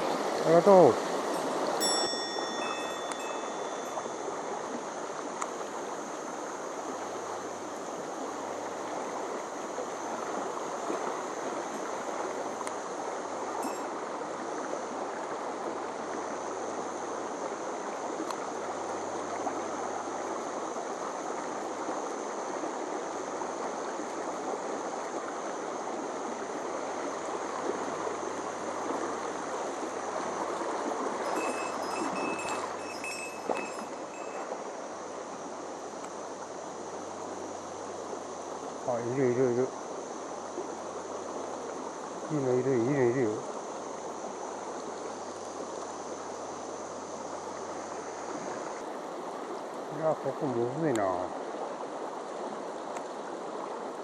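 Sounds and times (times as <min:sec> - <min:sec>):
mountain stream rushing: 0:00.0 - 0:54.0.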